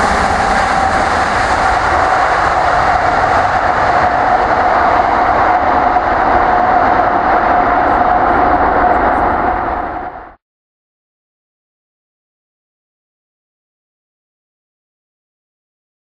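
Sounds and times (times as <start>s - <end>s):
vehicle running noise: 0.0s - 10.2s.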